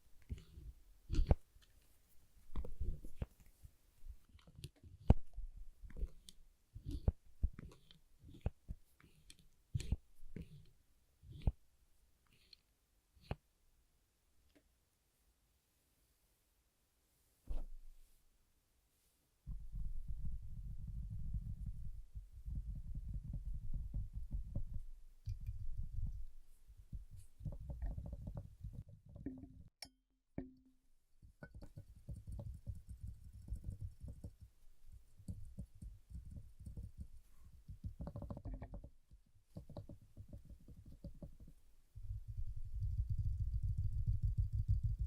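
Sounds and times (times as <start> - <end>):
fingertip tapping on a surface: 31.2 - 45.0.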